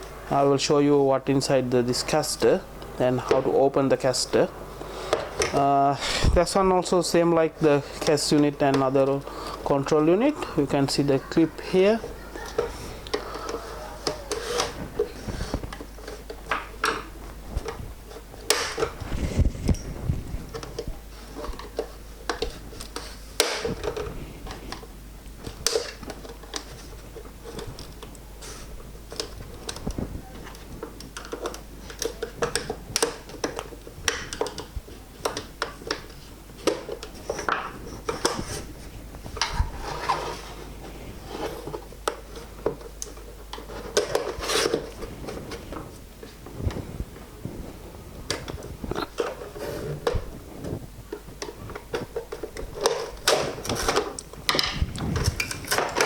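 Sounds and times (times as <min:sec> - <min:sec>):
plastic clicks and rubbing: 0:29.0 - 0:40.6.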